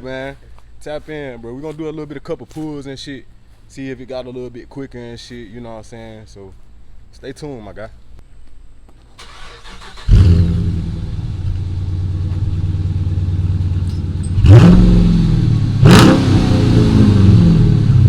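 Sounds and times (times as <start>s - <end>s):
car engine starting and idling: 9.2s - 18.0s
engine revving: 9.2s - 18.0s.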